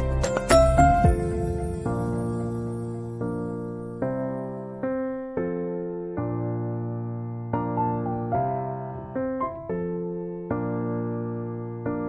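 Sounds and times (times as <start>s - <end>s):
soft electric piano melody: 0.0s - 12.0s.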